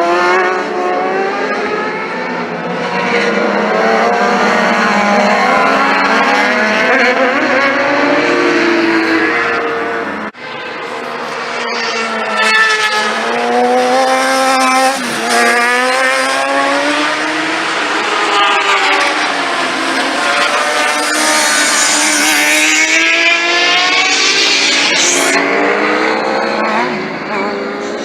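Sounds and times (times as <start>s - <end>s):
motorcycle engine accelerating: 12.0s - 27.4s.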